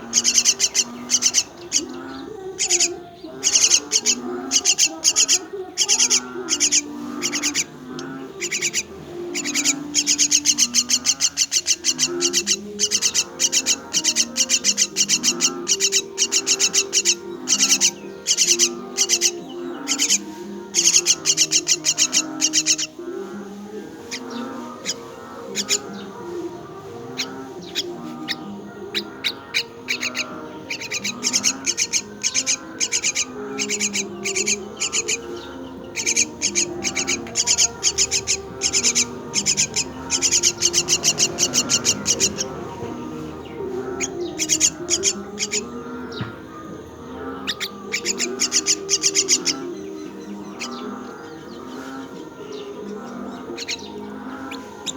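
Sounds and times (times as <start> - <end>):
chicks begging with harsh chirps: 0.0 - 54.9.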